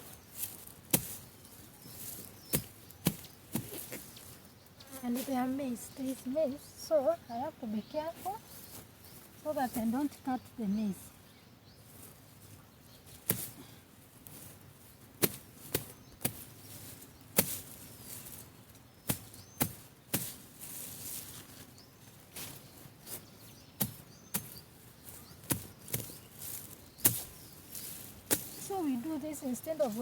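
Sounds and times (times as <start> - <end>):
machete slashing weed stems: 27.0 - 28.8.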